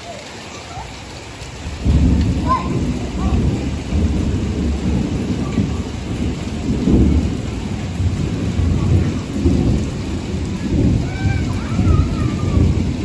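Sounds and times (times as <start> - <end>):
rain falling: 0.0 - 13.0
loud low rumble: 1.6 - 13.0.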